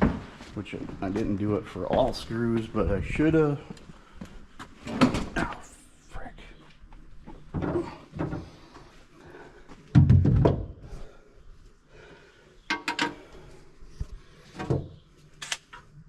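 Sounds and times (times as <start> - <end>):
knocks and clunks of parts: 0.0 - 0.4, 7.2 - 8.8, 9.8 - 10.9, 12.7 - 13.4.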